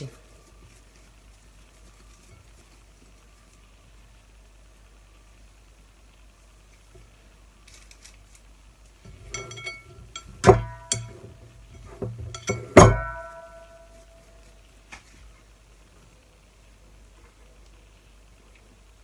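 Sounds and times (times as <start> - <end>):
kitchenware clinking: 9.1 - 13.6
metallic ringing knocks: 9.1 - 13.9.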